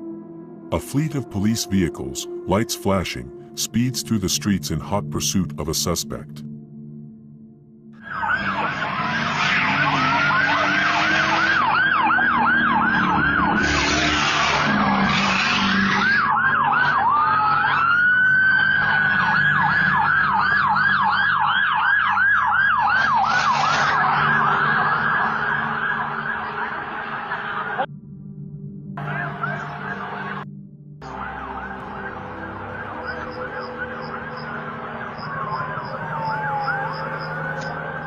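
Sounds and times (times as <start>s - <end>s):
police sirens yelping: 8.0s - 27.9s, 29.0s - 30.4s, 31.0s - 38.0s
vehicles speeding past: 8.1s - 21.0s, 22.8s - 27.9s, 31.1s - 38.0s.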